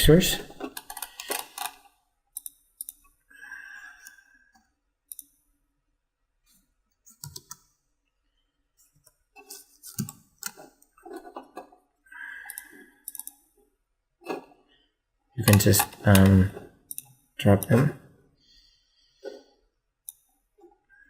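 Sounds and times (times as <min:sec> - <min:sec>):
computer mouse clicks: 0:00.7 - 0:03.1, 0:04.0 - 0:05.4, 0:07.0 - 0:07.7, 0:09.9 - 0:10.9, 0:12.4 - 0:13.4, 0:16.9 - 0:17.8, 0:20.0 - 0:20.3.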